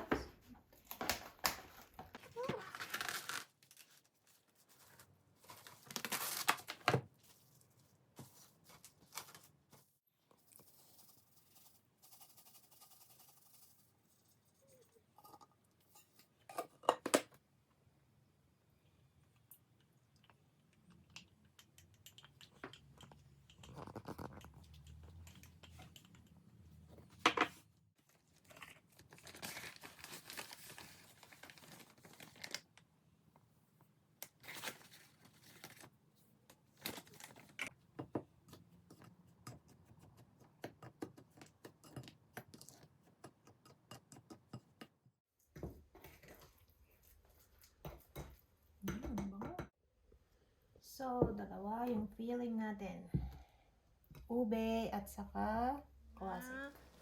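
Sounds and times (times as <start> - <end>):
rustling and crinkling: 0.0 - 10.0, 23.5 - 32.8, 34.3 - 37.8.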